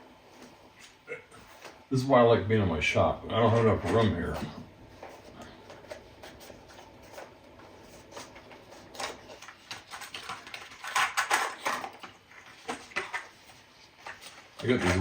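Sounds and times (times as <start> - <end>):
small objects clicking on a desk: 9.0 - 13.3.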